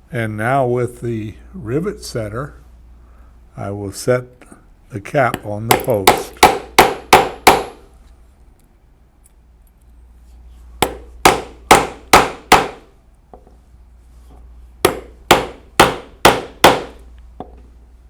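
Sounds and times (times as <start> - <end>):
rivet setter blows ringing: 5.4 - 6.5.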